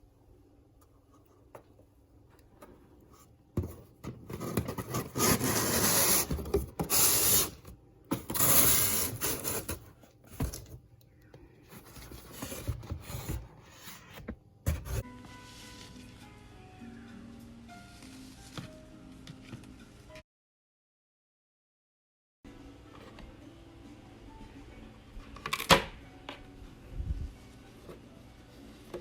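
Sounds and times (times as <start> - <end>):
paper and cardboard rustling: 2.6 - 10.8, 11.7 - 16.2.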